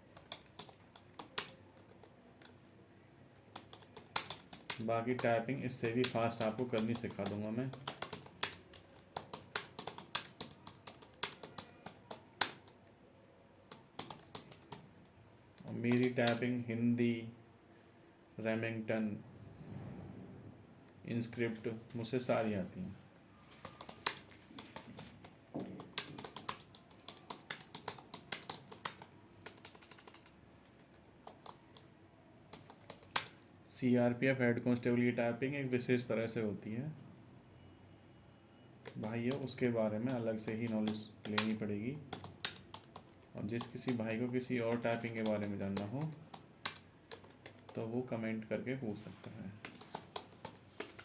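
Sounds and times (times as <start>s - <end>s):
keyboard typing: 0.0s - 2.7s, 3.4s - 12.9s, 13.6s - 14.9s, 15.5s - 16.6s, 23.4s - 33.4s, 38.8s - 47.8s, 49.1s - 51.0s.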